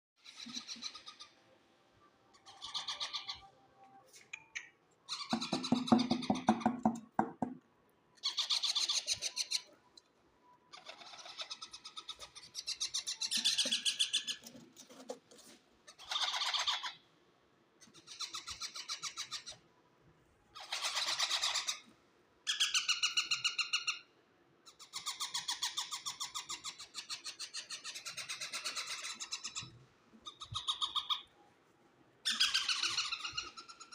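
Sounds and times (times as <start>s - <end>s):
parrot harsh rasping calls: 32.2s - 33.9s.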